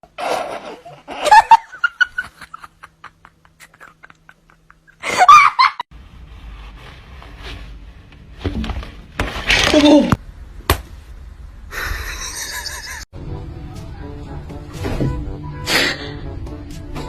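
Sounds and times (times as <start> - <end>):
person laughing: 0.2 - 5.8, 11.7 - 13.1.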